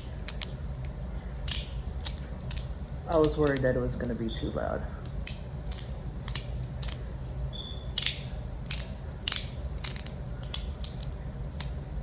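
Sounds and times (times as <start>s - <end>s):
magnetic fidget slider clicking: 5.0s - 7.0s, 8.0s - 11.8s.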